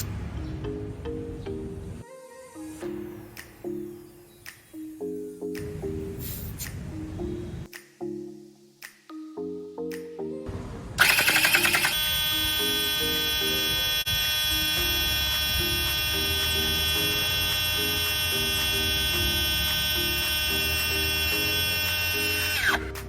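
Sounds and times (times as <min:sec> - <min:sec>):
air compressor buzzing: 0:11.0 - 0:23.0.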